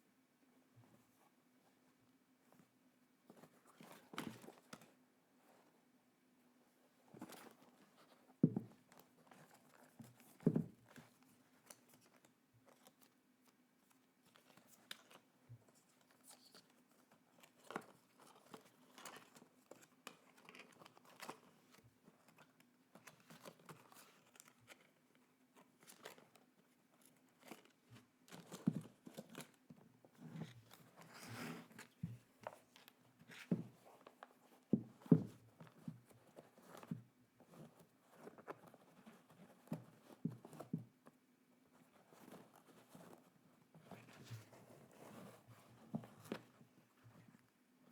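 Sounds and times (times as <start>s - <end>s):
small taps and knocks: 8.4s - 11.9s, 31.8s - 38.9s.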